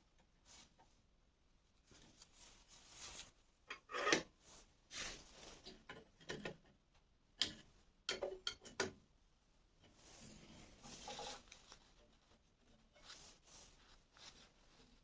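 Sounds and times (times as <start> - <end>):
short rustle: 1.8 - 3.4, 4.4 - 5.7, 10.0 - 15.0
small clicks and knocks: 5.6 - 9.1.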